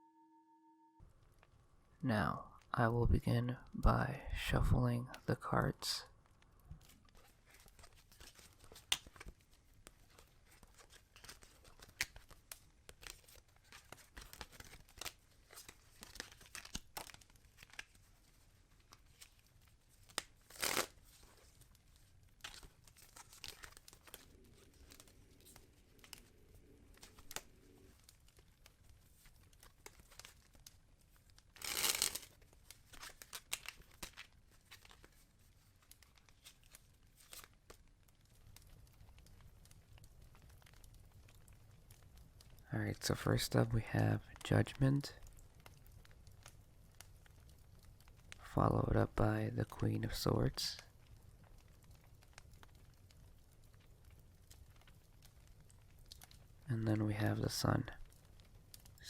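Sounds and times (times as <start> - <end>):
cards being shuffled: 6.8 - 37.8.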